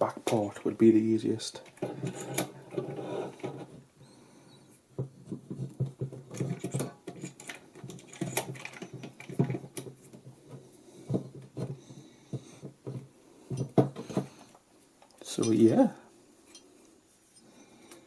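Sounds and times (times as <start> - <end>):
clicks and knocks of metal parts: 5.3 - 10.0.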